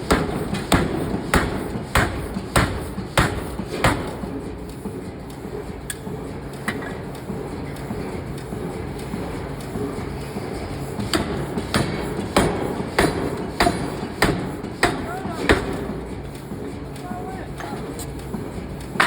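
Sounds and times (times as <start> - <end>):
low rumble of factory machinery: 0.0 - 19.0
hammer striking hot steel: 0.1 - 4.2, 11.1 - 15.8.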